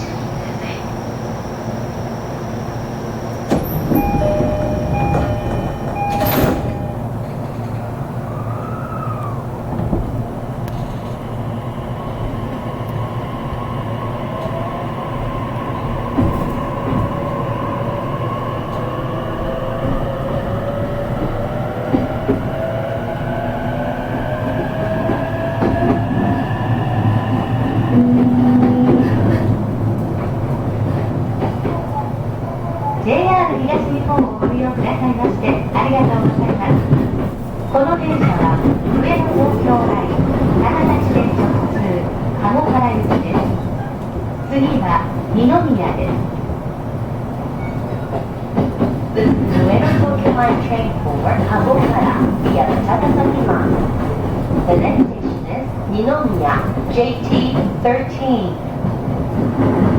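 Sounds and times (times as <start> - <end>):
train wheels rumbling on rails: 0.0 - 59.9
train traction motor whine: 1.1 - 7.4
short electronic beeping: 4.0 - 7.1.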